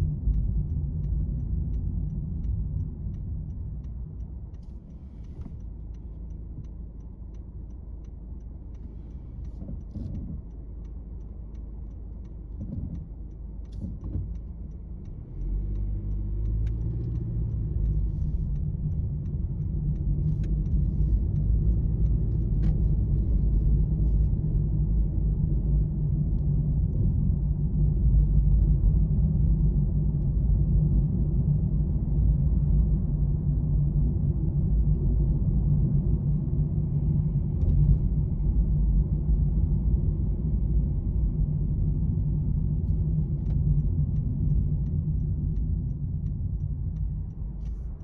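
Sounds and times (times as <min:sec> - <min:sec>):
faint ticks: 0:00.2 - 0:24.4, 0:42.1 - 0:48.0.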